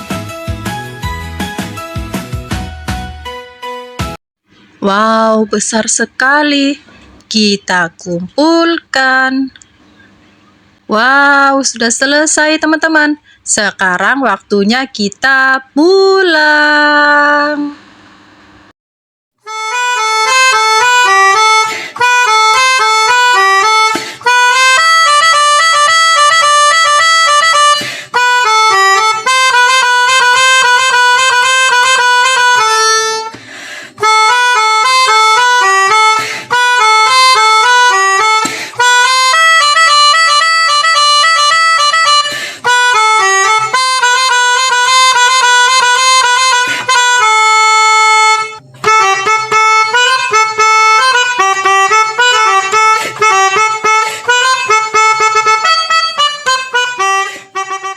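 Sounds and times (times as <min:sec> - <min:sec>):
reedy wind instrument melody: 0:19.4 - 0:57.9.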